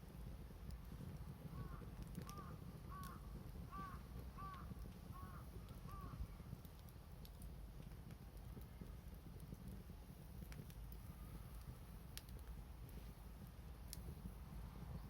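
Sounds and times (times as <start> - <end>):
crow cawing: 1.6 - 6.1
faint clicks: 2.0 - 3.2.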